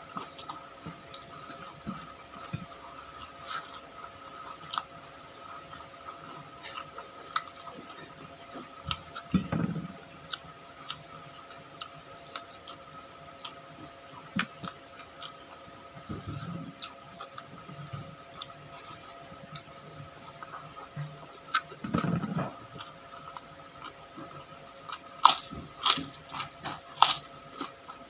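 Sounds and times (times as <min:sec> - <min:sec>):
faint steady hum: 0:00.0 - 0:28.0
loud bites or crunches: 0:25.2 - 0:27.3.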